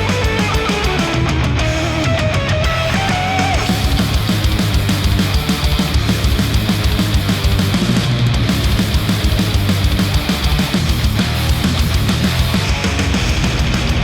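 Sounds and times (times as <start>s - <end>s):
heavy rock music: 0.0s - 14.0s
fast kick drum: 3.6s - 14.0s.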